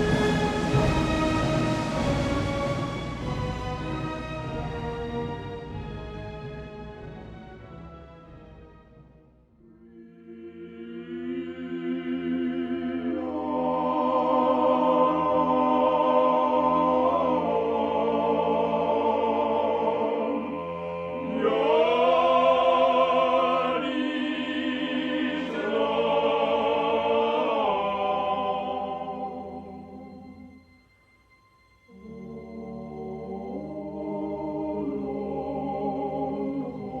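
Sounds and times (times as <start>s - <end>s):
low drone: 0.0s - 6.0s
choir-like chords: 0.0s - 37.0s.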